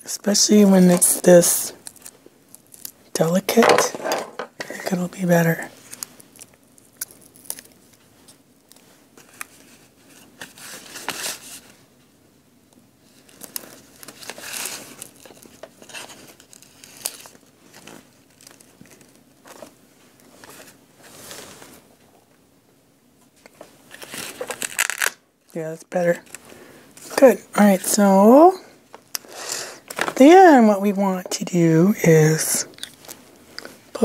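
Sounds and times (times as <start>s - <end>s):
paper and velcro crinkling: 13.1s - 21.8s, 23.9s - 25.2s.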